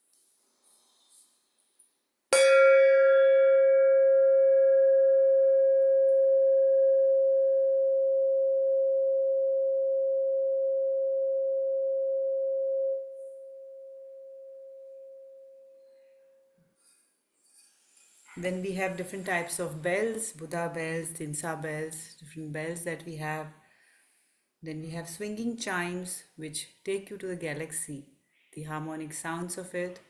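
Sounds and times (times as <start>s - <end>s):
metal chime tube ringing: 2.4s - 7.1s.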